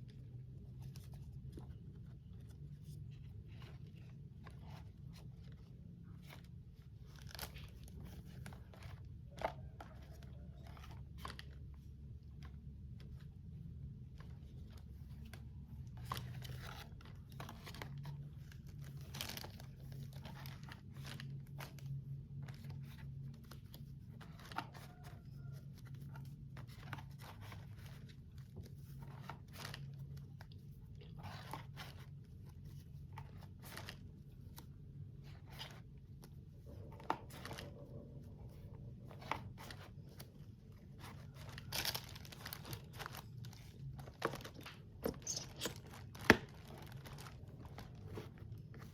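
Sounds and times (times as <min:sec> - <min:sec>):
plastic packaging crinkling: 0:39.0 - 0:48.9.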